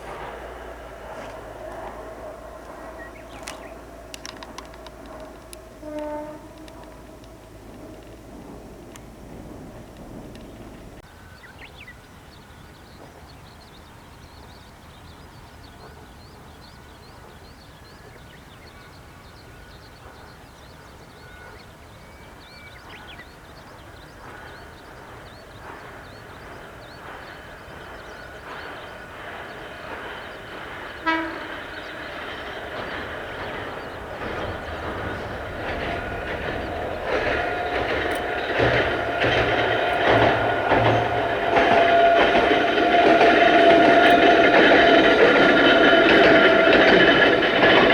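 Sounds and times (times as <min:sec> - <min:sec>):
electric train running: 0:00.0 - 0:11.0, 0:24.3 - 0:47.9
wheel clatter on rails: 0:00.0 - 0:11.0, 0:24.0 - 0:47.9
train horn blast: 0:01.1 - 0:07.8, 0:30.9 - 0:47.9.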